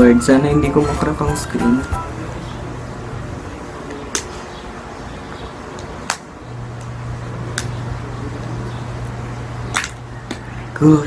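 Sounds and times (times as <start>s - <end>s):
steady low hum: 6.3s - 10.9s.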